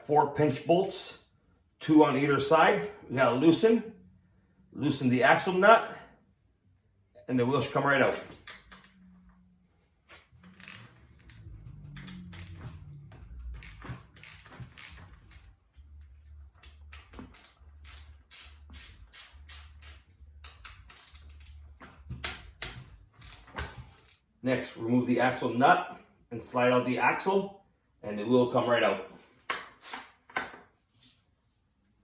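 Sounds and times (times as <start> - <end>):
socket ratchet clicking: 10.5 - 12.8, 13.5 - 15.5, 16.6 - 21.6.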